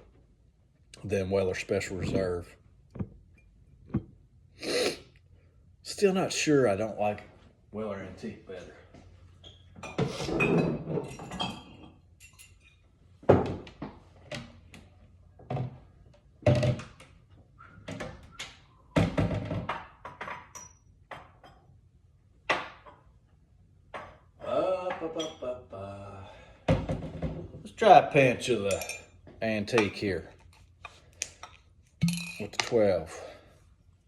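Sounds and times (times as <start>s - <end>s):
bottles and glasses knocking on table: 32.0s - 32.4s.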